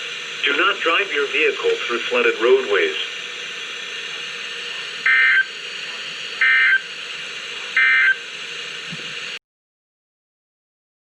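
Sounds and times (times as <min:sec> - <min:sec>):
radio hiss: 0:00.0 - 0:09.4
data tone bursts: 0:05.0 - 0:05.5, 0:06.4 - 0:06.9, 0:07.8 - 0:08.2.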